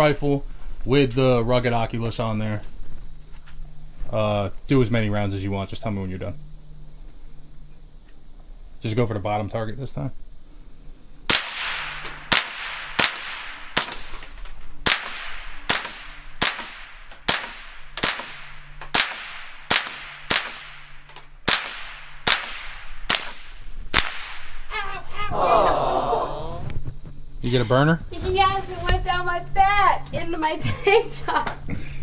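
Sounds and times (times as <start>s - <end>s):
suppressed rifle shots: 11.3s - 24.6s.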